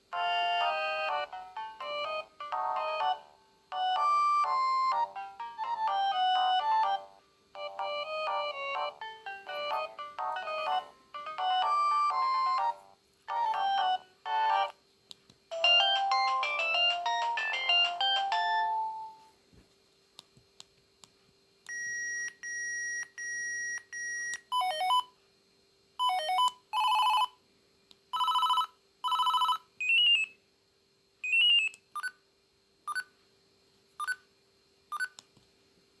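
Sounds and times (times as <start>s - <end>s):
electronic ringtone melody: 0.2s - 14.7s, 15.5s - 19.2s
short beeps and chirps: 31.2s - 32.2s.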